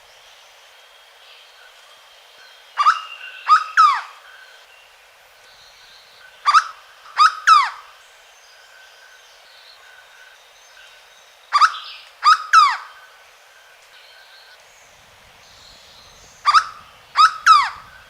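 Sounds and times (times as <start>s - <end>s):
bird singing ringing notes: 5.5s - 18.0s.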